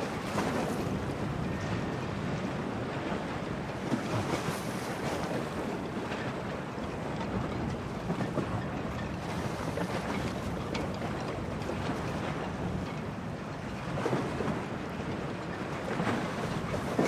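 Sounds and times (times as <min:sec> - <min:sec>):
waves rushing: 0:00.0 - 0:06.5.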